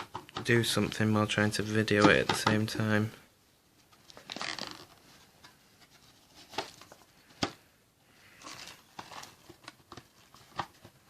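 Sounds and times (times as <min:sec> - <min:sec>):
plastic clicks and knocks: 0:00.0 - 0:00.6, 0:01.9 - 0:02.8
cloth rustling: 0:03.7 - 0:07.4.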